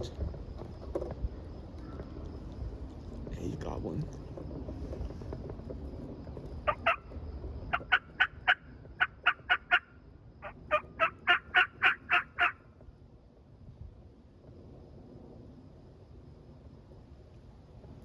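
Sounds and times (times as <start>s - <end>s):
turkey yelping: 6.7s - 7.1s, 7.7s - 12.6s.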